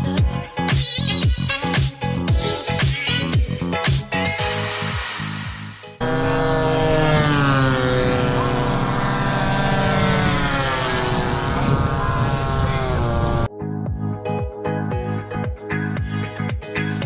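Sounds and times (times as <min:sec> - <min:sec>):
model plane propeller engine: 0:06.0 - 0:13.5.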